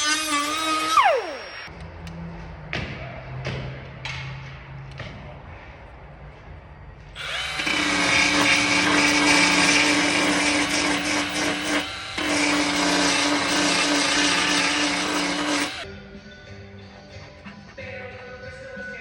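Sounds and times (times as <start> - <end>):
power grinder grinding metal: 0.0 - 1.7, 7.2 - 15.9.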